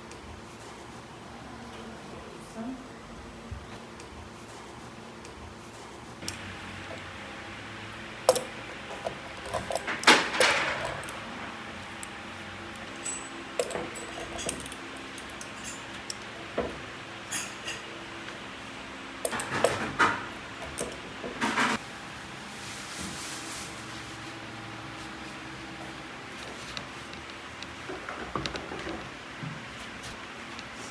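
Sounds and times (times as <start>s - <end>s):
utensils and cookware clinking: 12.8s - 16.4s, 17.2s - 18.1s.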